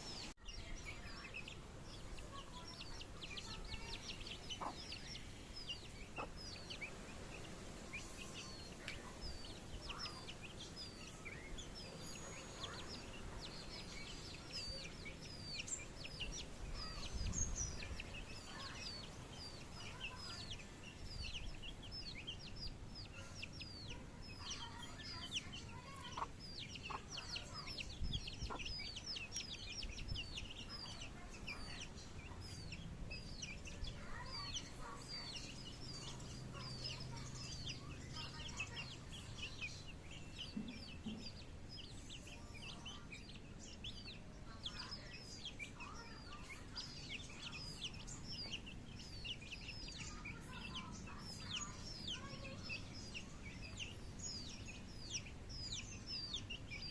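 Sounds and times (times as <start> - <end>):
chicks peeping: 0.0 - 56.9
hen clucking: 1.4 - 10.6, 24.4 - 32.4.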